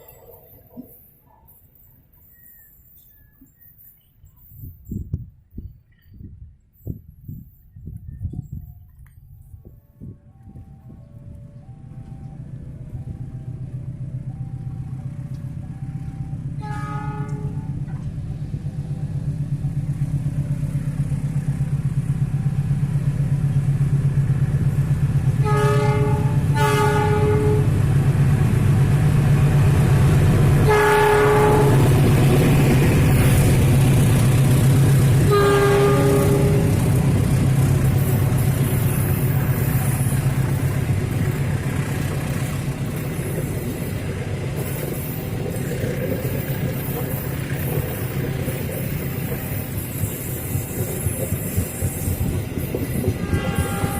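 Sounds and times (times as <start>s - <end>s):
train engine rumble: 0.0s - 53.9s
train horn blasts: 14.5s - 18.0s, 25.4s - 27.8s, 30.6s - 32.2s, 35.1s - 37.1s, 53.0s - 53.9s.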